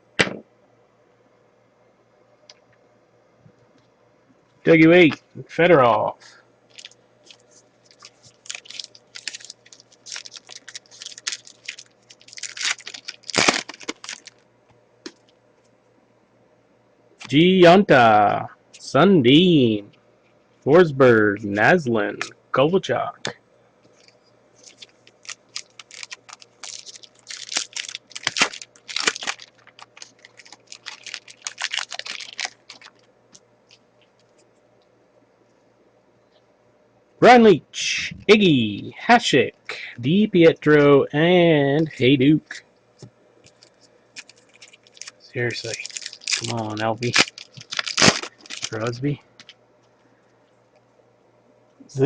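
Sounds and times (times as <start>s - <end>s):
foil wrapper crinkling: 6.7s - 14.4s, 23.9s - 34.4s, 43.5s - 49.6s.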